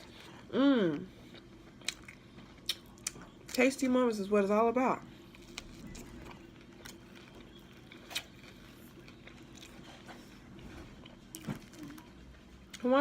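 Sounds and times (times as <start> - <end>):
person chewing: 1.1 - 3.5, 5.2 - 12.8.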